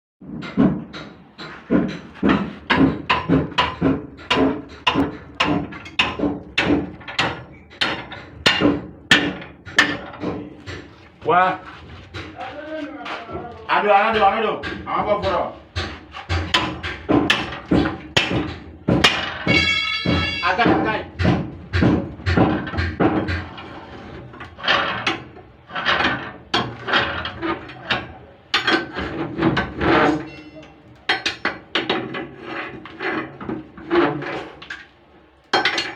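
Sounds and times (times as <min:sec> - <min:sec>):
scraping and rubbing on wood: 0:00.3 - 0:34.9
hammer blows ringing: 0:14.1 - 0:22.4, 0:29.9 - 0:31.4.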